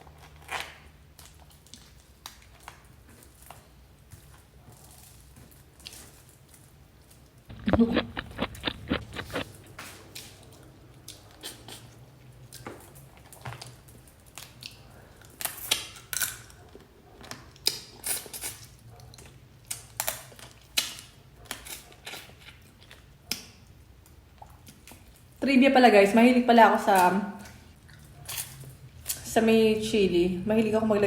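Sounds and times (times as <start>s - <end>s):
wet chewing and lip smacking: 7.5s - 9.8s, 27.7s - 29.3s.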